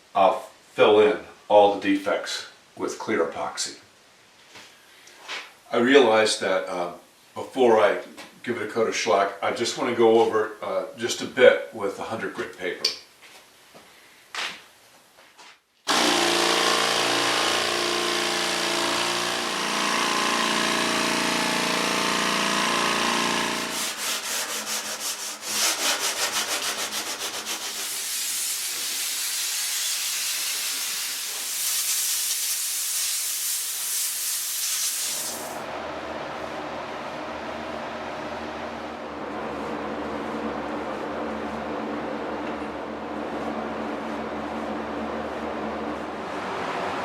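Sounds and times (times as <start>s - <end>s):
sandpaper scratching wood: 23.2s - 35.6s
hum: 35.6s - 47.0s.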